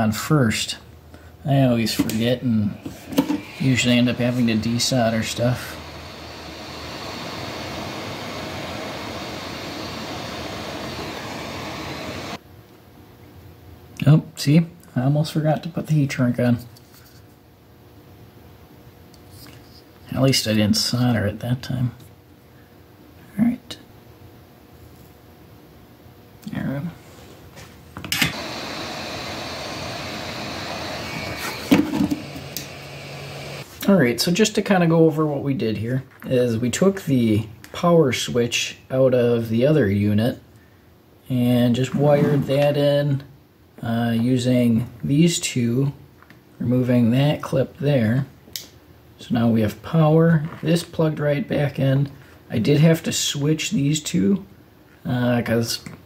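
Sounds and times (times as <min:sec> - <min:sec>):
faint high fan whine: 0:00.0 - 0:56.0
heat gun blowing: 0:02.7 - 0:12.4, 0:28.2 - 0:33.7.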